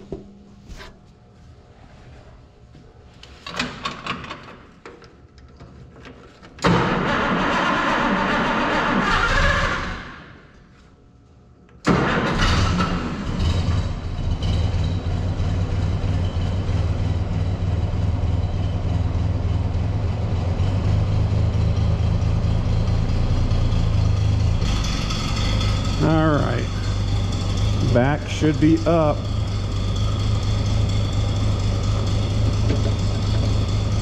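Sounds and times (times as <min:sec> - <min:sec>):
tractor engine idling: 0:13.5 - 0:34.0.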